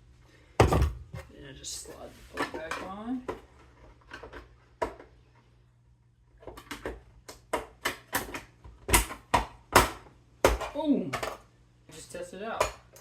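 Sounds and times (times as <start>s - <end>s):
plastic parts clicking and knocking: 2.3s - 5.2s, 6.4s - 11.5s.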